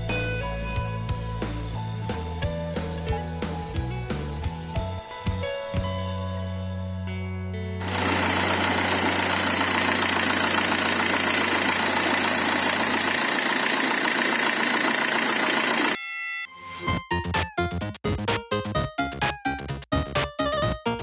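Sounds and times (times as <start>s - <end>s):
diesel engine idling: 7.8s - 16.0s.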